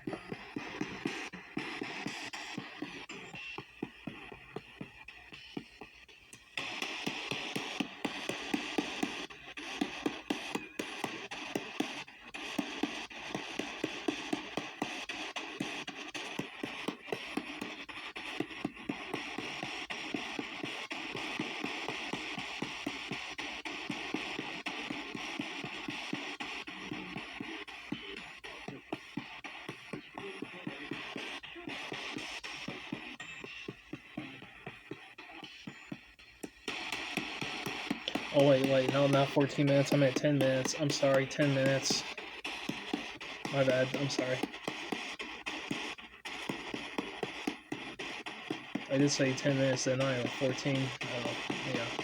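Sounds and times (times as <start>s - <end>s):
radio static and station snatches: 0.0s - 52.0s
rapid clicks: 0.0s - 52.0s.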